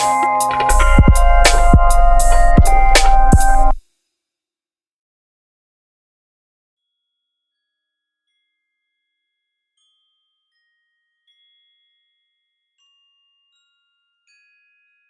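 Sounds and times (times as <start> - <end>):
bell-like mallet music: 0.0 - 3.8.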